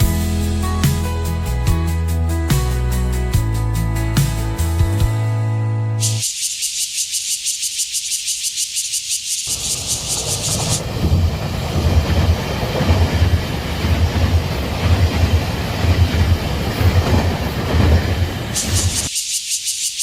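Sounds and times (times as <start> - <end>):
train wheels clacking on rails: 9.5 - 19.1.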